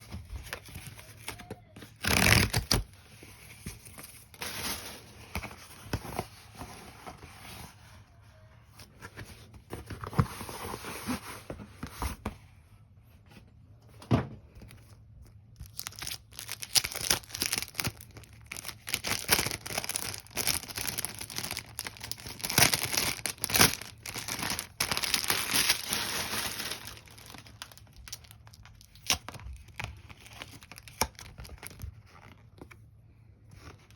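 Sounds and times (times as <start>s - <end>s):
card packaging tearing and crinkling: 0.1s - 6.4s, 15.6s - 32.7s
loud paper rip: 2.0s - 2.8s.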